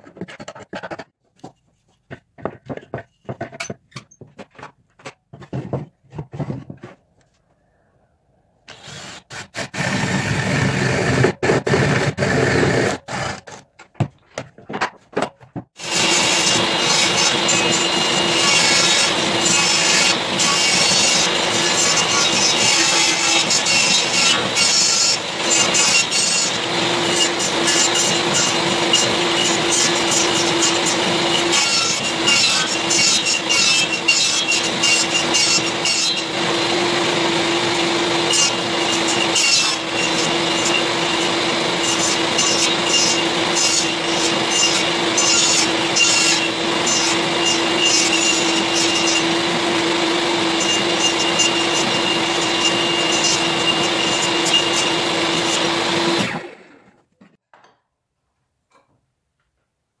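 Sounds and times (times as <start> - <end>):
electric power tool cutting wood: 8.7 - 13.6, 15.8 - 56.9.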